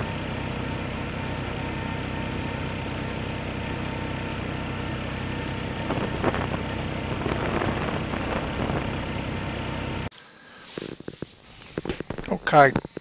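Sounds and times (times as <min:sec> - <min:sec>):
small gasoline engine running: 0:00.0 - 0:10.1.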